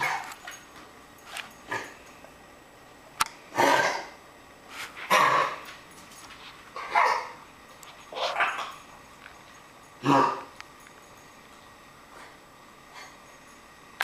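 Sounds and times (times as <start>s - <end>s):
puppy coughing: 3.6s - 4.1s, 5.1s - 5.6s, 10.0s - 10.5s.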